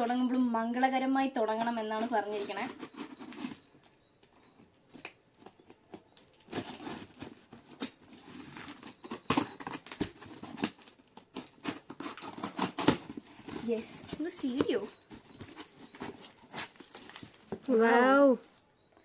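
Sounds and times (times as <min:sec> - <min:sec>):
packaging rustling and tearing: 0:05.4 - 0:17.7.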